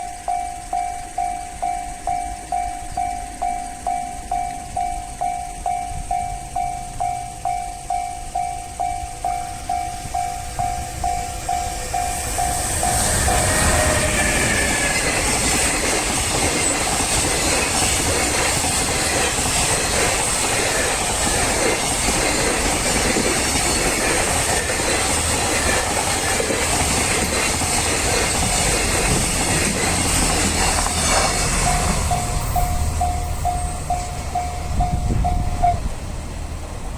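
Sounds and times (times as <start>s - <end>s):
electronic crossing bell dings: 0.0s - 13.3s, 31.6s - 35.9s
train wheels clattering over rail joints: 8.4s - 36.0s.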